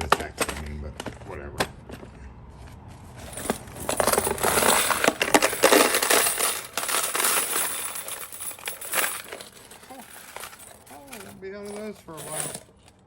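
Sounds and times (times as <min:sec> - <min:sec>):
metal keys clattering and jingling: 0:03.2 - 0:13.0.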